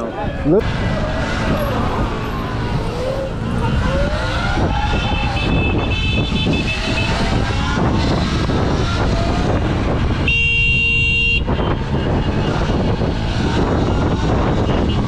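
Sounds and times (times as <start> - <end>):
wind and road rumble: 0.0 - 15.0
car horn honk: 4.9 - 8.1, 10.2 - 12.6.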